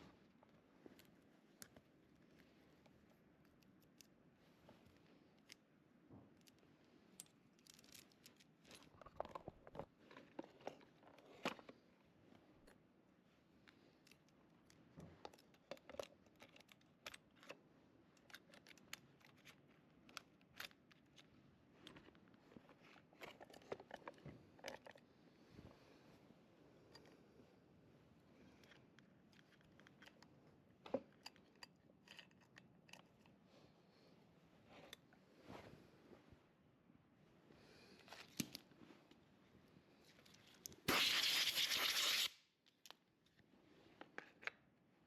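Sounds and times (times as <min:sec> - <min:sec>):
tools and parts clicking: 0:14.0 - 0:17.6, 0:31.1 - 0:33.4.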